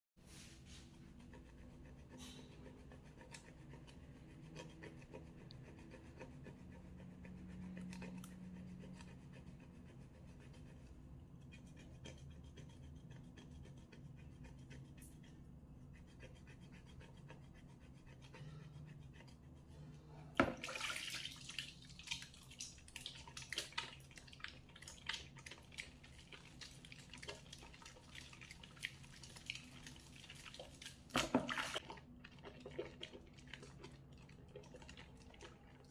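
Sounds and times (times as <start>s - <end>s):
wet soap being lathered: 20.6s - 35.9s.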